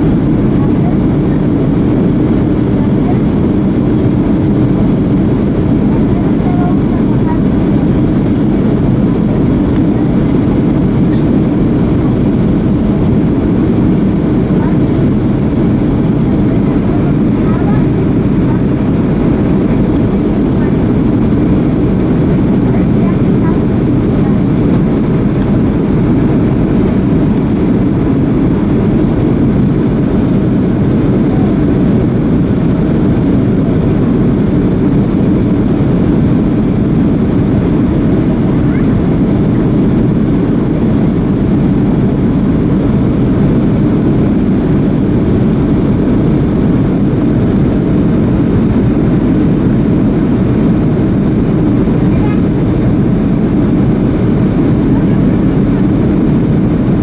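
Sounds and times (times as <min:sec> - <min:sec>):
airplane cabin drone: 0:00.0 - 0:57.0.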